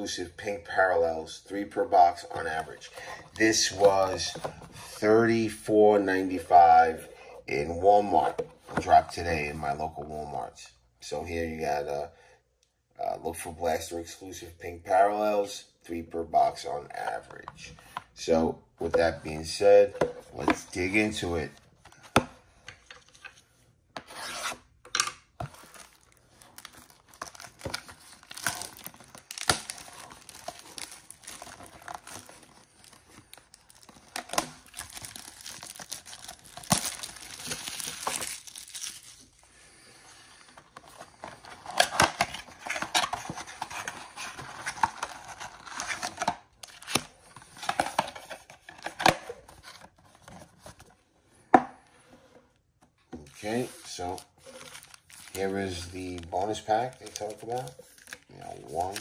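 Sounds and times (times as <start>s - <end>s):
plastic wrapping crinkling: 25.5s - 39.4s, 53.7s - 59.0s.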